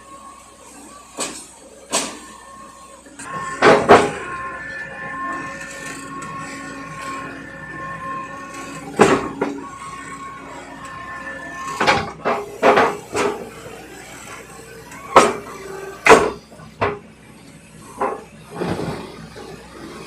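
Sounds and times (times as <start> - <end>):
high whine: 0.0 - 16.5
machine hum: 0.0 - 17.0
heavy metal clanks: 3.2 - 13.6.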